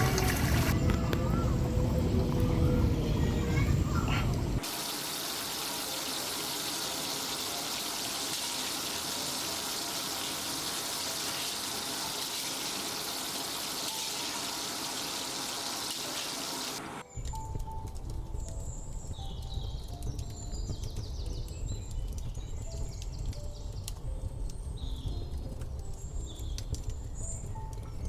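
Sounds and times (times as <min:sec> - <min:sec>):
running water rushing: 0:00.0 - 0:17.0.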